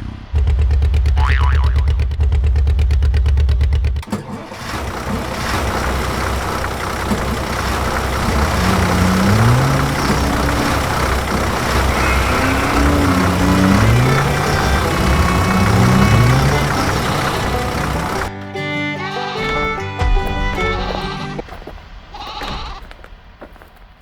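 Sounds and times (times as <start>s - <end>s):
engine revving: 0.0s - 18.3s
motor pulsing: 3.8s - 18.3s.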